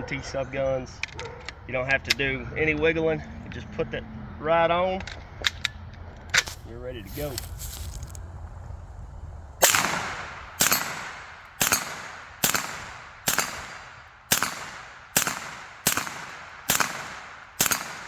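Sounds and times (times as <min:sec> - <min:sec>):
suppressed gunshots with echo: 0:09.6 - 0:18.0.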